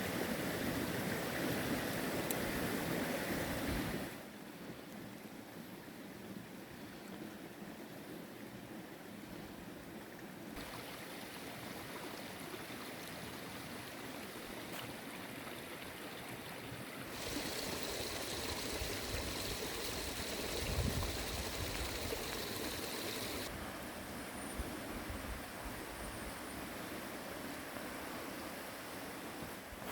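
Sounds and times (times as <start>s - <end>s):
running water rushing: 10.6s - 23.5s.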